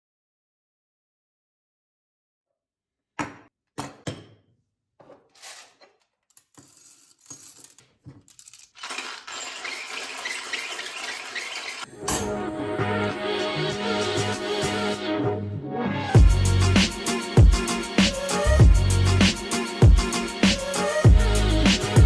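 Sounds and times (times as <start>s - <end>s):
music: 11.9s - 22.0s.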